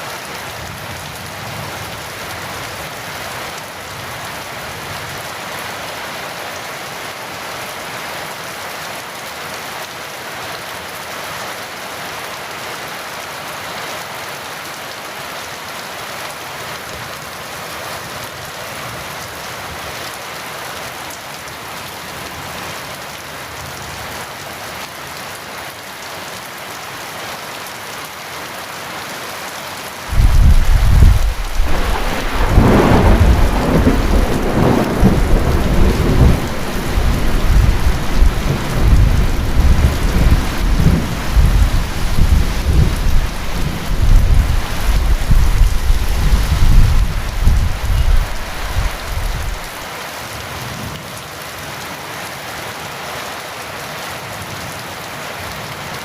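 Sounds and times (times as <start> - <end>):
heavy rain falling: 0.0 - 56.0
thunder rumbling: 30.1 - 49.8.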